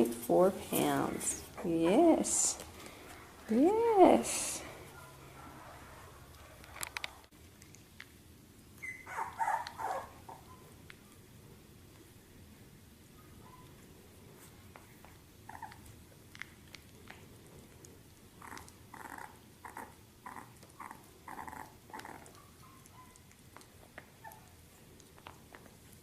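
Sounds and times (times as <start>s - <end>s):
puppy squeaks: 8.8s - 10.6s
puppy whimpering: 8.8s - 10.7s, 15.4s - 15.9s, 18.4s - 24.6s.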